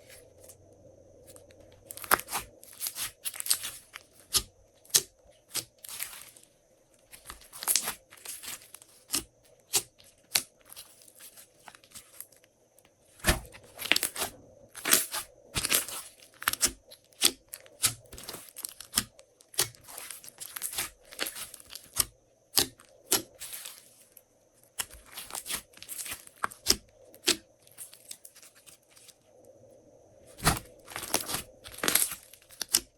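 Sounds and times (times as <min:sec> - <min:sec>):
slime popping and crackling: 0:30.4 - 0:32.8.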